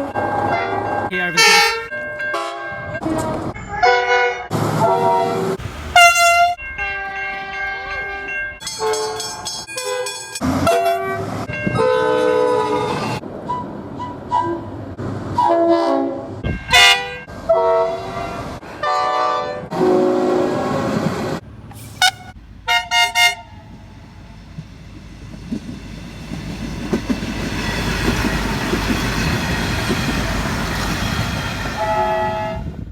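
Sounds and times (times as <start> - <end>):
train horn blasts: 0.3 - 2.6, 4.2 - 9.2, 15.4 - 21.1, 21.8 - 23.9, 31.7 - 32.8
train wheels on rails: 4.5 - 11.5, 20.5 - 32.9.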